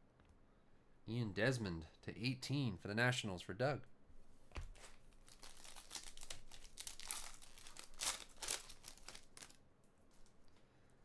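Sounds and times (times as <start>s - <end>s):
plastic wrapper tearing: 4.8s - 9.6s.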